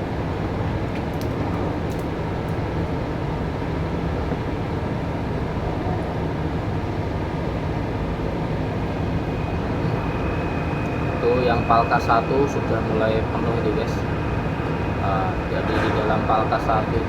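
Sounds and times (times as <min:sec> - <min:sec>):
heavy machinery droning: 0:07.9 - 0:17.0
faint steady tones: 0:08.6 - 0:17.0.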